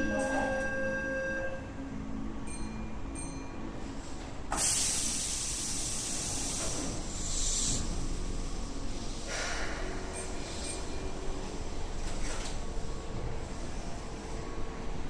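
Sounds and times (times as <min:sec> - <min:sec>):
high-pitched tones: 0:00.0 - 0:01.8
train air brakes hissing: 0:04.0 - 0:11.6.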